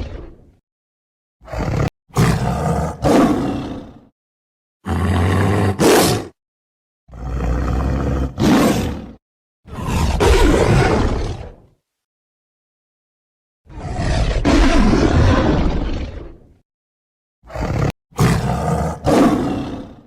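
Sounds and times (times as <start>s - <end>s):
tiger roaring: 1.4s - 4.0s, 4.8s - 6.4s, 7.1s - 11.7s, 13.7s - 16.4s, 17.4s - 20.0s.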